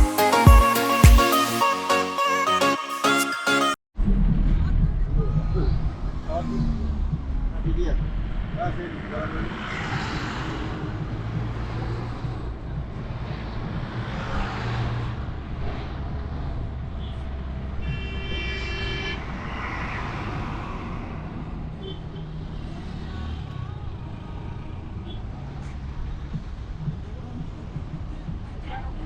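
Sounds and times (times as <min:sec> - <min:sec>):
road noise: 0:04.0 - 0:29.0
vehicle horn: 0:17.8 - 0:19.3.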